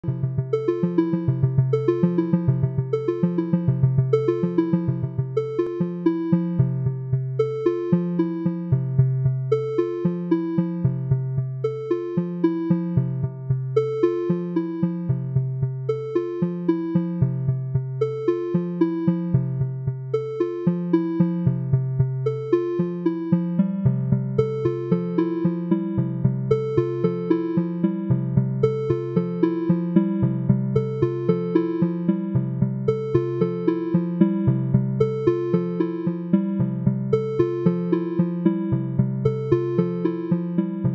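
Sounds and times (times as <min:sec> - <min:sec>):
looping keyboard notes: 0:00.0 - 0:40.9
sustained low bass notes: 0:34.5 - 0:35.5.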